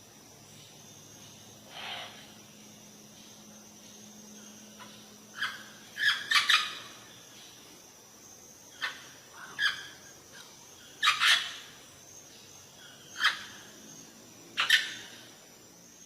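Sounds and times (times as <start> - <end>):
harsh bird calls: 4.8 - 7.1, 10.9 - 11.8.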